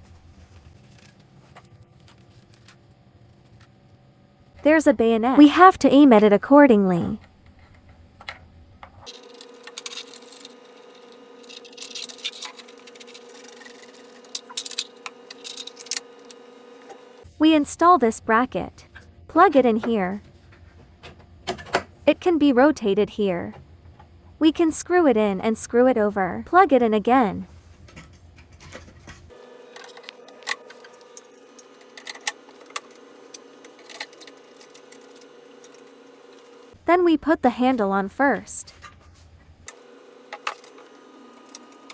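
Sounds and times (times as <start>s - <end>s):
steady hum: 8.6s - 21.1s, 29.3s - 36.8s, 39.7s - 41.9s
plastic parts clicking: 9.1s - 17.0s.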